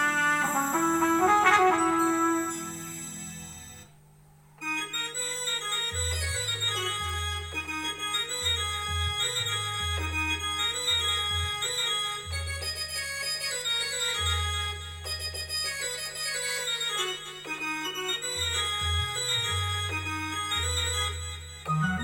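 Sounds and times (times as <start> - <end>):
synthesizer organ melody: 0.0 - 3.6, 18.0 - 22.0.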